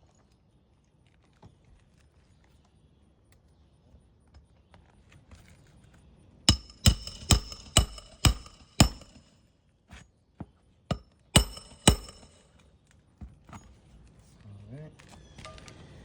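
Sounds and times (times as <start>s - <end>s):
hammer striking nails: 6.5s - 9.3s, 10.9s - 12.4s.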